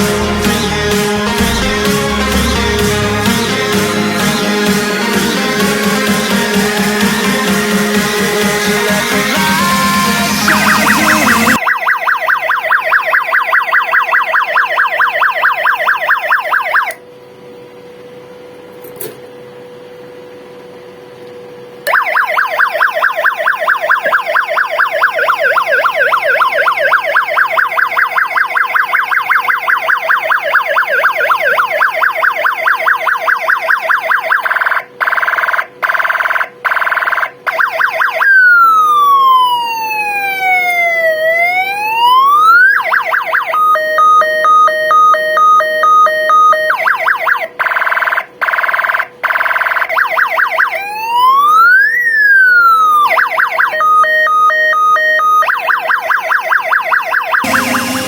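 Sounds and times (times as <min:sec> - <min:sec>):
electronic siren warble: 0:00.0 - 0:05.3, 0:09.0 - 0:17.0, 0:21.8 - 0:58.0
steady electronic tones: 0:00.0 - 0:13.1, 0:42.1 - 0:47.4, 0:52.5 - 0:55.5, 0:57.4 - 0:58.0
siren wail: 0:00.0 - 0:17.0, 0:21.8 - 0:58.0.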